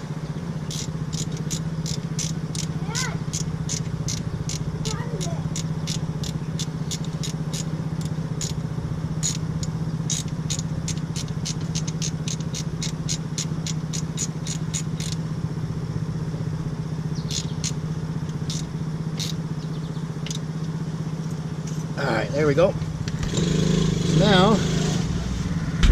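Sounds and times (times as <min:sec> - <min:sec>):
steady low hum: 0:00.0 - 0:25.9
ratchet wrench clicking: 0:00.7 - 0:15.3, 0:17.2 - 0:20.8.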